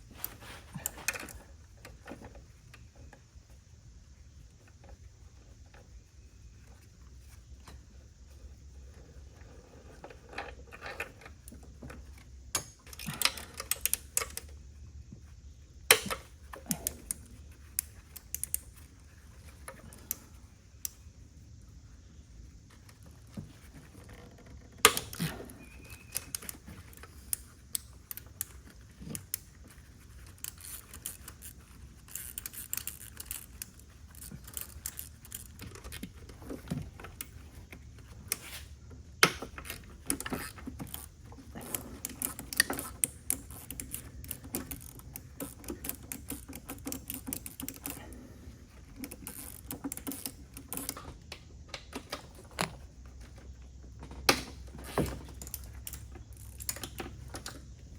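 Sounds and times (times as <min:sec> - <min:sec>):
ratchet clicking: 0:24.8 - 0:36.6, 0:49.0 - 0:51.0.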